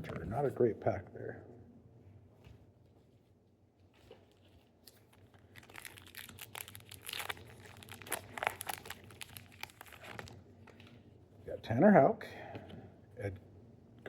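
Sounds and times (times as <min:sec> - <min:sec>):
plastic wrapper tearing and crinkling: 0:04.1 - 0:10.9.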